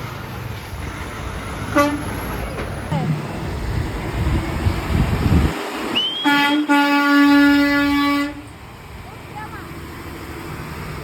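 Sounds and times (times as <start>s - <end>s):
truck passing rumble: 0.0s - 11.0s
truck air horn blast: 1.7s - 2.2s, 6.0s - 8.5s.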